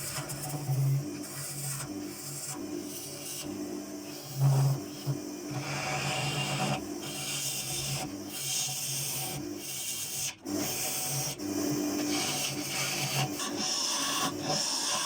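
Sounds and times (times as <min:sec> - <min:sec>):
wood lathe motor hum: 0:00.0 - 0:15.0
tool working spinning wood: 0:12.0 - 0:15.0.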